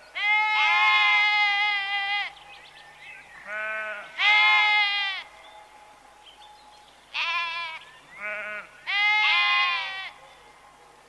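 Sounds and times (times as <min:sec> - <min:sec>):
livestock bleating: 0:00.2 - 0:02.3, 0:03.4 - 0:05.3, 0:07.1 - 0:10.2.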